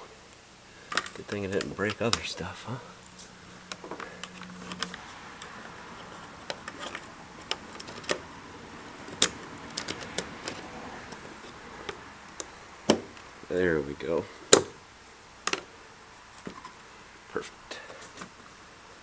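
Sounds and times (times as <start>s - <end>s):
faint low hum: 0.0s - 19.0s
hand tools and small parts clicking: 0.8s - 8.4s, 9.0s - 13.3s.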